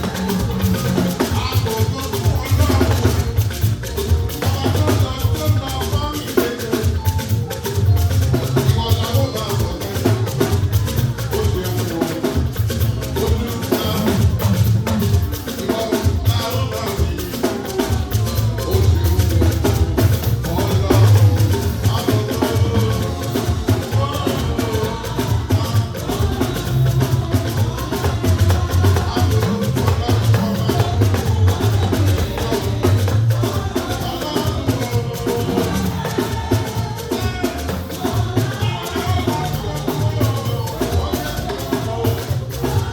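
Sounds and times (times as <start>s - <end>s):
drums: 0.0s - 42.9s
live band music: 0.0s - 42.9s
shaker percussion: 0.0s - 42.9s
heavy pulsing bass line: 17.9s - 42.9s.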